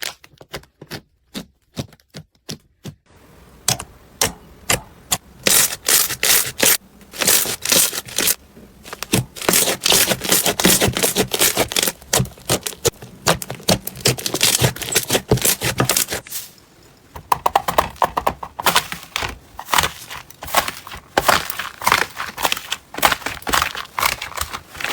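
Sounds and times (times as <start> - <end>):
slime crackling and popping: 5.5 - 16.2, 19.2 - 24.9.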